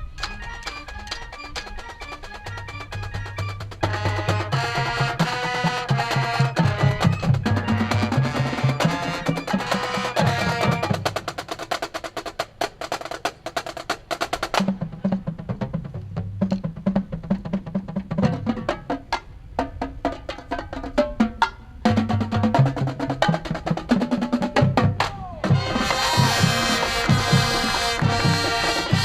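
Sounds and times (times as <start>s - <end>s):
marching band playing: 0.0s - 29.0s
low pitched drum notes: 20.9s - 29.0s.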